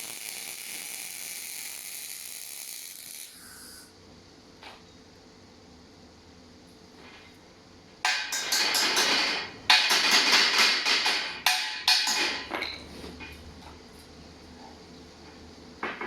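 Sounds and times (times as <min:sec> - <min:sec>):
welding arc crackling: 0:00.0 - 0:03.9.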